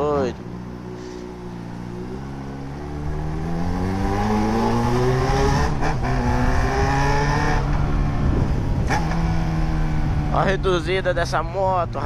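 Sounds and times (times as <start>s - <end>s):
motorcycle engine accelerating: 0.4s - 12.0s.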